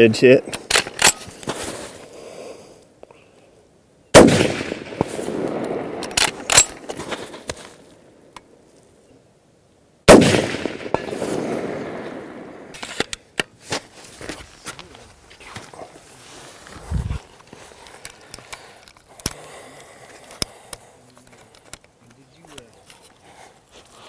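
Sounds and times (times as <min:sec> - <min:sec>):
rifle shots with rolling echo: 0:04.1 - 0:06.9, 0:10.1 - 0:12.8.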